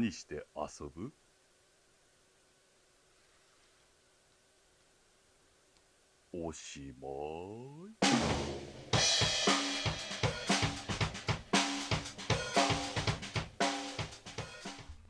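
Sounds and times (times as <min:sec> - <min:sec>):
drum kit playing: 0:08.0 - 0:15.0.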